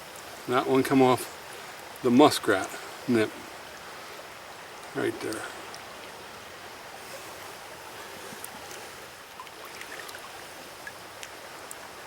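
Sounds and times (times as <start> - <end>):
stream water running: 0.0 - 12.0.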